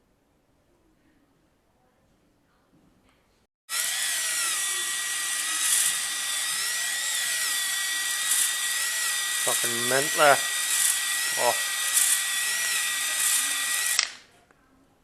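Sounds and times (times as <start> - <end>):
power drill motor whine: 3.7 - 14.2.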